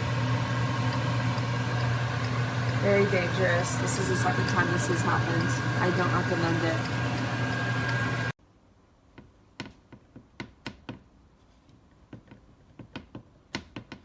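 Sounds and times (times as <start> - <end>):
loud steady tonal noise: 2.6 - 8.3.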